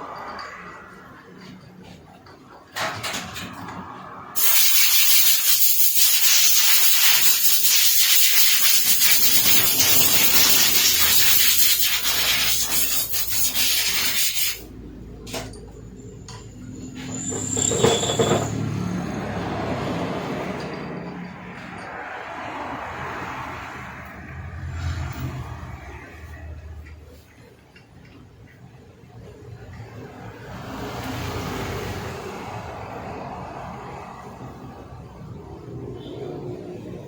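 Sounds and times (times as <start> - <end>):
compressed air blow gun hissing: 4.4 - 14.7.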